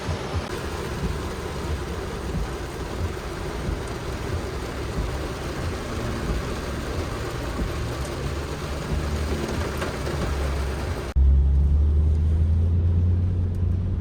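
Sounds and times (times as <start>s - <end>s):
low thumps: 0.0s - 11.2s
water rushing against truck: 0.0s - 11.2s
low engine rumble: 0.0s - 14.0s.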